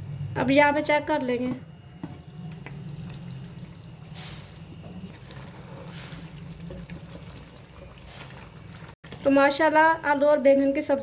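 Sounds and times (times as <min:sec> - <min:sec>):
gas flame hum: 0:00.0 - 0:10.7
pot simmering with bubbling: 0:02.1 - 0:10.2.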